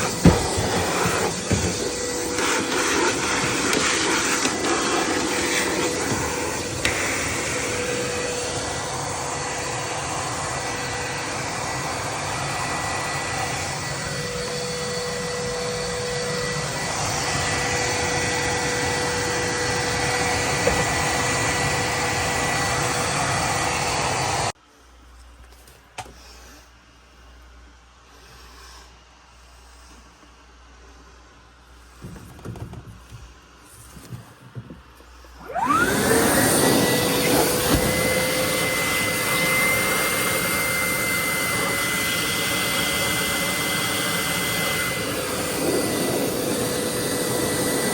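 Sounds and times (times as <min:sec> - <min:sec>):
vacuum sucking water: 0:00.0 - 0:24.5, 0:35.1 - 0:47.9
wet dry vac running: 0:00.0 - 0:24.5, 0:28.0 - 0:47.9.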